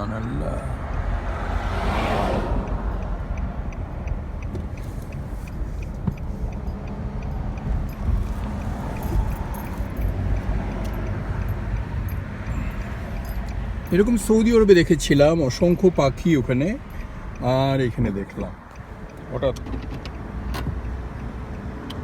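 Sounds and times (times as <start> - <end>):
car interior rumble: 0.0 - 22.0
faint high ticking: 2.6 - 19.4.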